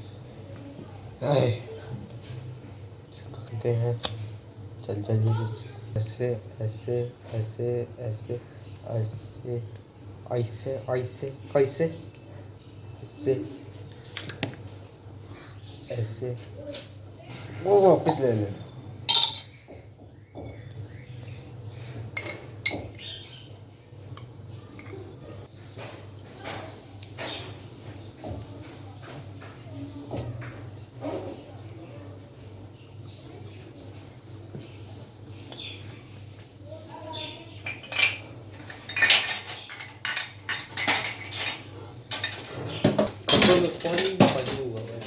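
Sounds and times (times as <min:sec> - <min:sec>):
low steady hum: 0:00.0 - 0:27.8
spoon clinking against crockery: 0:19.1 - 0:19.8, 0:22.1 - 0:23.2, 0:24.1 - 0:25.1, 0:37.1 - 0:45.0.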